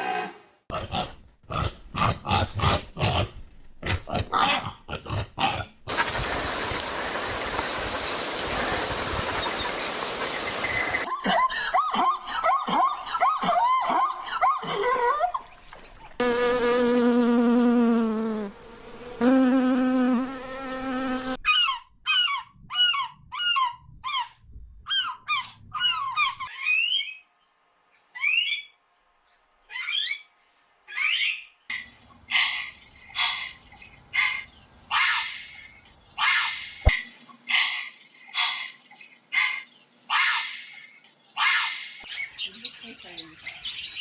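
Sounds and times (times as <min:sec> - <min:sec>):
insect-like buzz: 0:16.2 - 0:21.4.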